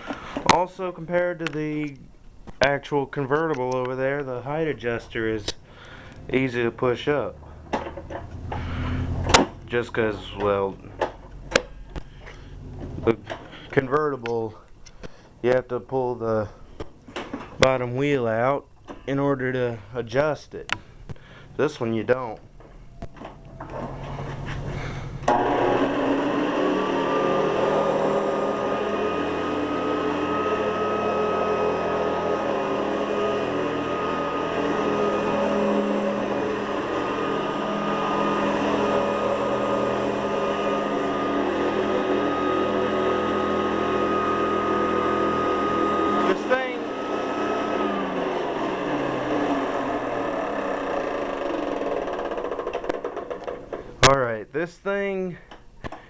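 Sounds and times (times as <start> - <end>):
vacuum cleaner motor running: 23.1 - 53.7.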